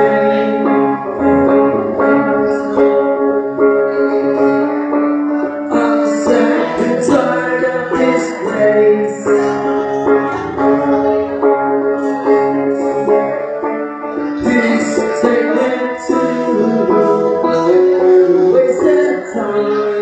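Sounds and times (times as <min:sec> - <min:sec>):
acoustic guitar band music: 0:00.0 - 0:20.0
person singing: 0:00.0 - 0:20.0.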